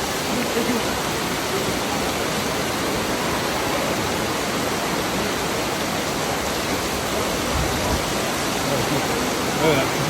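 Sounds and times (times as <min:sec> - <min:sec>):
heavy rain pouring: 0:00.0 - 0:10.0.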